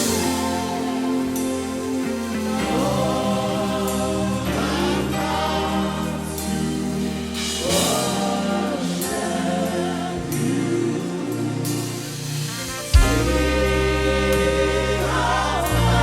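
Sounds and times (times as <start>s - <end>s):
gospel choir singing: 0.0s - 16.0s
instrumental accompaniment: 0.0s - 16.0s.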